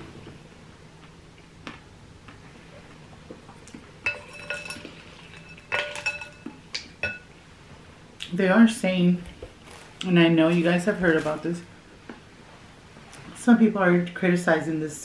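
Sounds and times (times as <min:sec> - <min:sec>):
spoon clinking against bowl: 0:04.0 - 0:07.3.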